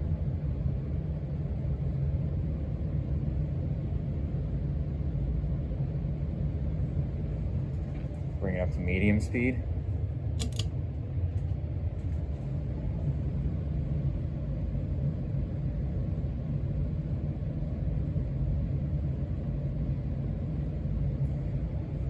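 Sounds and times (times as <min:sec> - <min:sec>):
ceiling fan whooshing: 0:03.0 - 0:22.0
fan switch click: 0:10.4 - 0:10.7.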